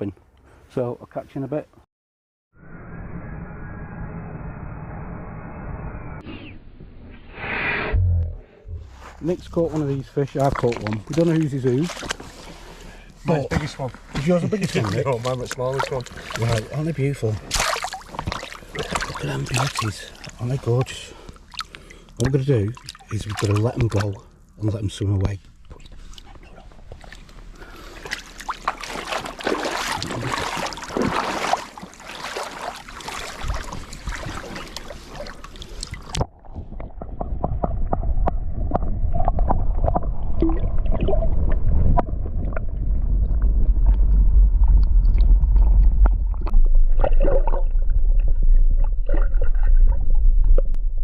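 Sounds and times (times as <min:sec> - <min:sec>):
muffled low rumble: 0:07.8 - 0:17.5, 0:36.3 - 0:51.0
water splashing and sloshing: 0:08.7 - 0:51.0
water gurgling: 0:14.2 - 0:24.2, 0:25.7 - 0:51.0.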